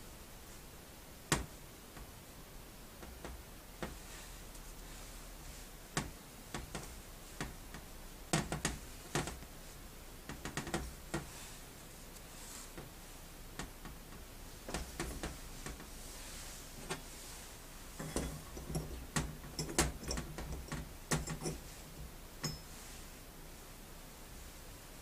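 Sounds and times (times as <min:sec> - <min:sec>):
steady low hum: 0:00.0 - 0:25.0
metal parts and tools clicking: 0:18.0 - 0:21.8.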